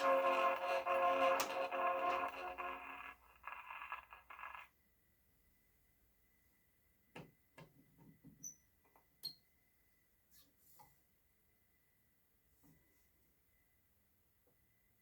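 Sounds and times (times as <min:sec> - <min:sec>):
phonograph music: 0:00.0 - 0:04.0.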